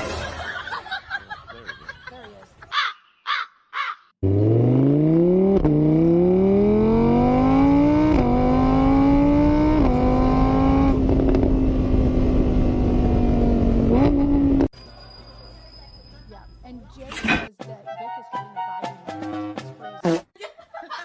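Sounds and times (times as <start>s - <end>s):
vehicle engine accelerating: 4.2s - 14.7s.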